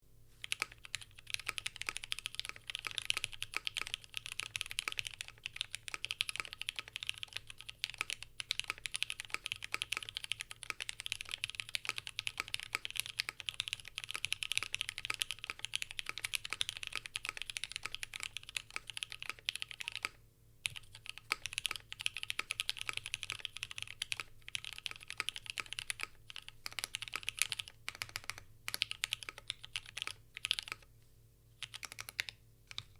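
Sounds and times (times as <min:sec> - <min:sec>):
mechanical keyboard fast typing: 0:00.4 - 0:30.9, 0:31.6 - 0:32.9.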